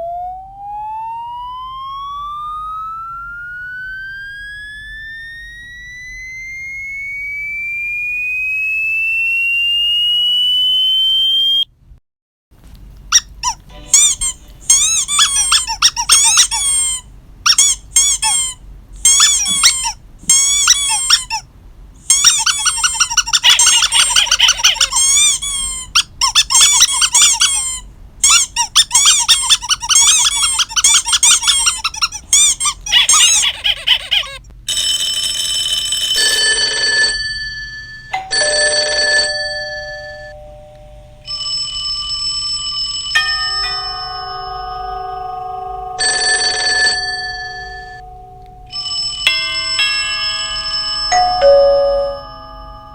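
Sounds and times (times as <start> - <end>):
electronic tone gliding upward: 0.0 - 11.6
squeaky dog toy squeaks: 13.1 - 34.5.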